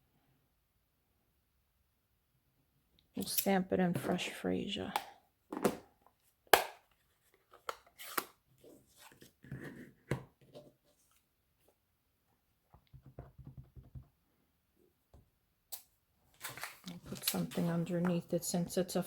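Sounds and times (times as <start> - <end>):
plastic clicks and knocks: 12.7 - 14.1.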